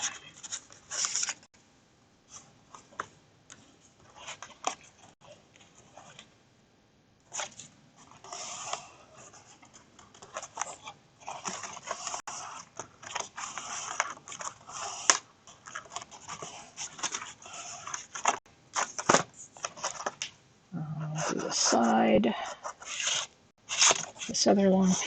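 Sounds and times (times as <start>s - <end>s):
cardstock rustling and scraping: 0.0s - 1.5s, 7.3s - 20.2s, 21.2s - 25.0s.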